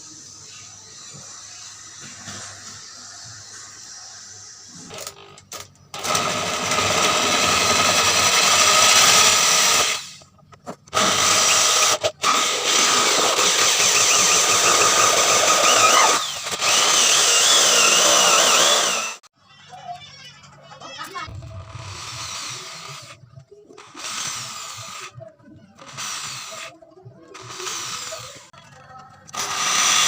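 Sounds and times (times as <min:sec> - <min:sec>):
handheld power tool running: 0:04.9 - 0:10.2, 0:10.9 - 0:19.3, 0:21.3 - 0:28.5, 0:29.3 - 0:30.0.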